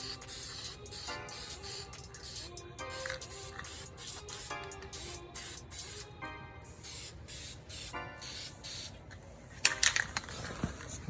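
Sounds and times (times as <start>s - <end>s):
spray paint hissing: 0.0s - 6.1s, 6.8s - 9.0s.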